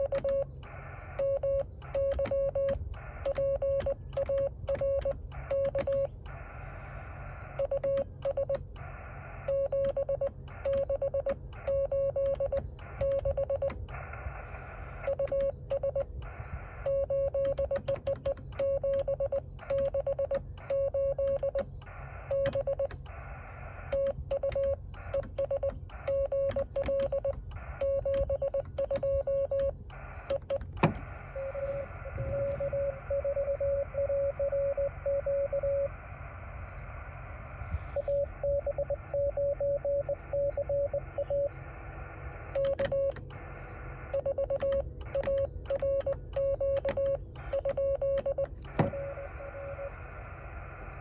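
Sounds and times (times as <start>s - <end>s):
sharp clicks: 0.0s - 34.8s, 42.4s - 51.0s
receiver hiss: 0.0s - 51.0s
morse code tone: 9.4s - 21.6s, 22.2s - 36.0s, 37.7s - 41.6s, 44.0s - 50.1s.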